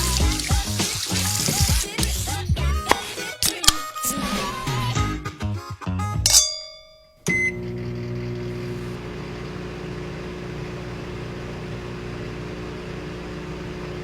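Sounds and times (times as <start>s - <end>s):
microwave oven humming: 7.2s - 14.0s
keypad beeps: 7.3s - 7.6s.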